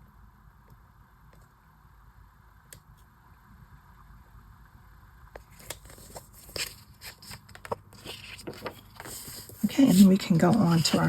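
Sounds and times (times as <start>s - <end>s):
stickers clicking and rustling: 5.6s - 11.0s.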